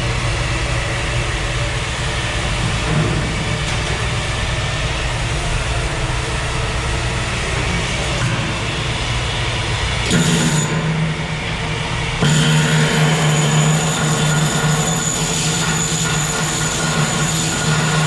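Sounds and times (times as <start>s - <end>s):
arc welding crackle and hiss: 12.5s - 18.0s.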